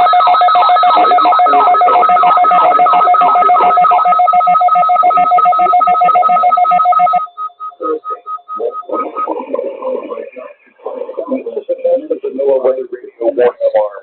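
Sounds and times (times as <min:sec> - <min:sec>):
short beeps: 0:00.0 - 0:10.8
weather radio alarm tone: 0:00.0 - 0:13.7.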